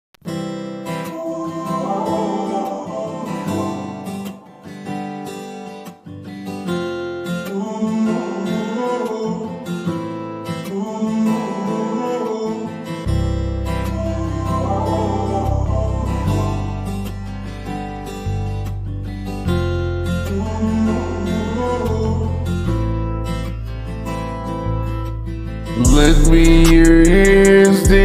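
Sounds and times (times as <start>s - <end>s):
strummed acoustic guitar chords: 0.2s - 28.0s
low bass line: 13.1s - 17.3s, 25.8s - 28.0s.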